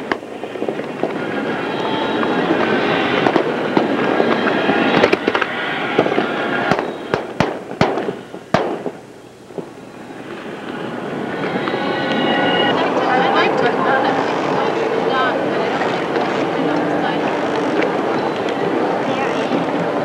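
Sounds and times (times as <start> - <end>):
loud firework bangs: 0.0 - 10.7
fireworks crackling: 0.0 - 20.0.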